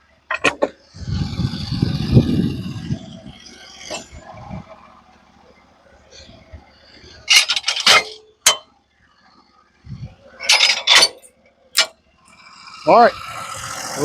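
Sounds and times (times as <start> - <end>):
scraping and clattering: 0.3 - 2.0, 3.6 - 4.7, 6.9 - 8.7, 10.4 - 11.9.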